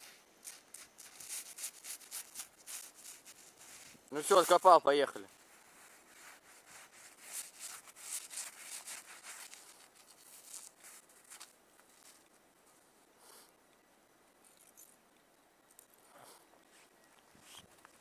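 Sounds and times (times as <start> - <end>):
snow crunching and scraping: 0.0 - 12.3.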